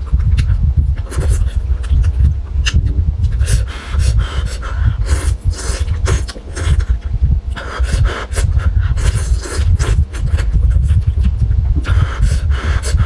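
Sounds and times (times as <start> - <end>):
person chewing and slurping: 0.0 - 13.0
heavy breathing: 3.3 - 13.0.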